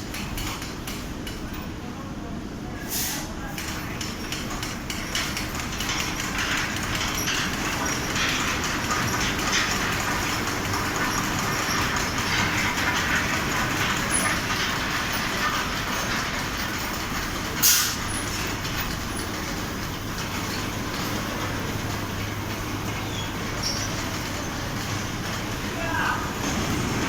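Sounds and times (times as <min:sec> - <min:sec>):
fabric spreader machine running: 0:03.8 - 0:27.0
sharp hiss: 0:17.6 - 0:18.0.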